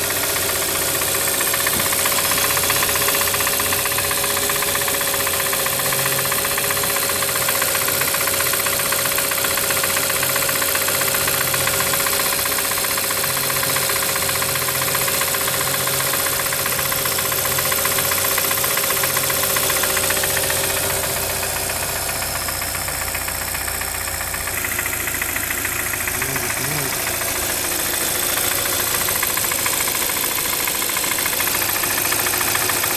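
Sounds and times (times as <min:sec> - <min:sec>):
car engine knocking: 0:00.0 - 0:32.9.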